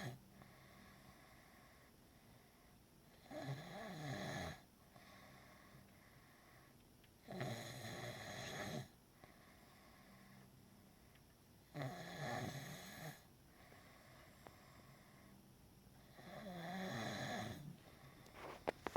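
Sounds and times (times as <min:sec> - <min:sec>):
person snoring: 0:07.3 - 0:08.9, 0:11.8 - 0:13.2, 0:16.1 - 0:17.7.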